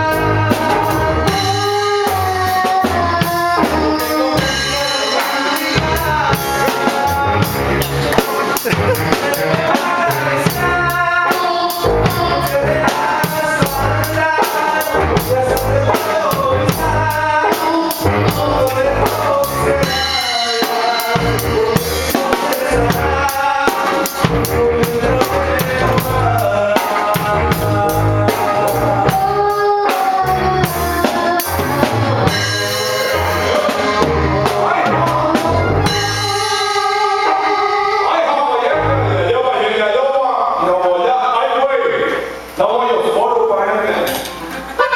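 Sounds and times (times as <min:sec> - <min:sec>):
melodic lead: 0:00.0 - 0:39.6
bass drum and snare: 0:05.6 - 0:29.5.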